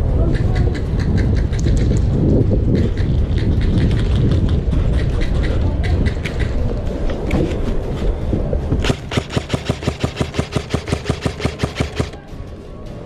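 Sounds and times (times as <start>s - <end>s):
low rumble of microphone handling: 0.0s - 8.9s
airsoft gun firing full auto: 8.8s - 12.2s.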